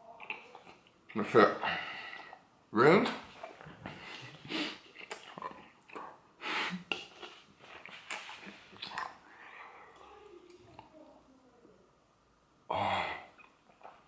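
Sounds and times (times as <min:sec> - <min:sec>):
person chewing gum: 0:03.9 - 0:06.2, 0:06.8 - 0:09.3
wet mouth noises: 0:03.9 - 0:09.2.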